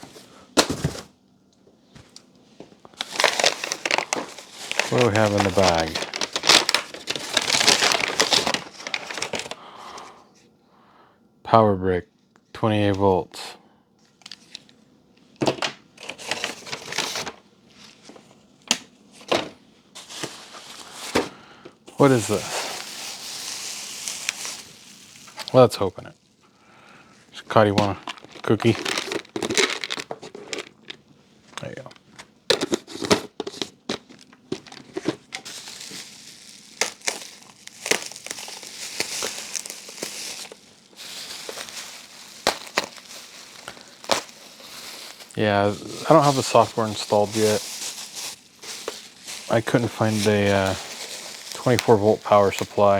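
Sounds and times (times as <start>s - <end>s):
packaging rustling: 0.0s - 1.1s, 2.0s - 10.0s, 15.4s - 26.4s, 27.1s - 31.0s, 31.6s - 52.9s
dull knocks of parts set down: 0.5s - 1.1s, 15.4s - 15.8s, 18.1s - 19.6s
plastic wrapping crinkling and tearing: 2.9s - 10.0s, 16.0s - 26.4s, 27.1s - 31.0s, 31.6s - 52.9s.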